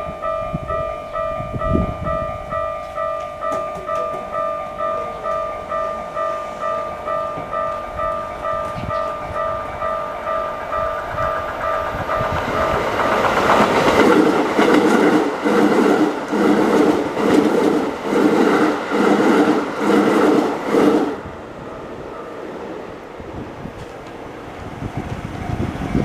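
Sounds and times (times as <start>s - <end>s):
level crossing bell ringing: 0.0s - 13.2s
train wheels clacking: 2.8s - 22.3s.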